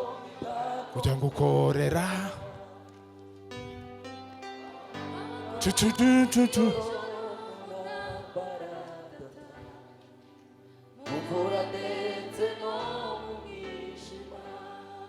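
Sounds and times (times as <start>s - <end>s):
voices singing gospel song: 0.0s - 3.2s, 4.6s - 15.0s
sustained accompaniment: 2.5s - 8.6s.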